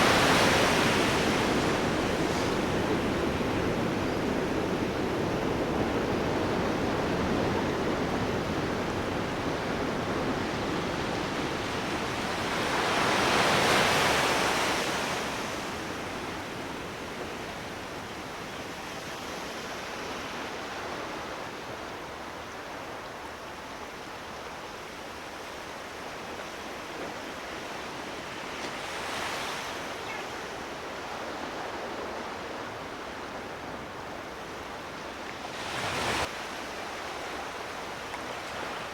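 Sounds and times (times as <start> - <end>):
sea waves breaking: 0.0 - 10.4.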